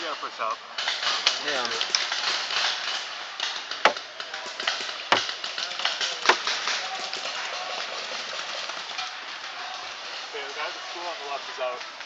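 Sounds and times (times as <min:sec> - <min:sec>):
paintball marker shots: 0:03.4 - 0:06.8.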